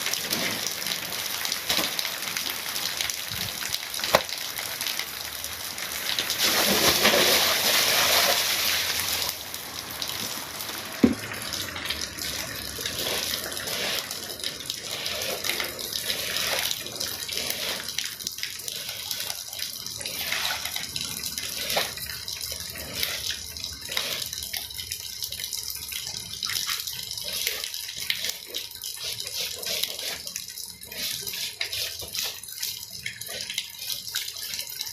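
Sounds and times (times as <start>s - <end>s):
water splashing on wet rug: 6.0s - 17.8s
scraping strokes over wet rug: 6.4s - 9.2s, 12.3s - 18.0s, 29.0s - 32.4s.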